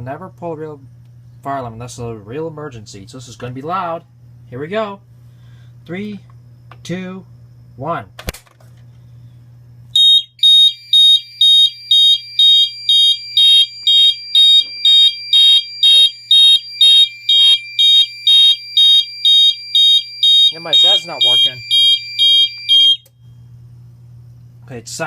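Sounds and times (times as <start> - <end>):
fire alarm horns pulsing: 10.0 - 23.2.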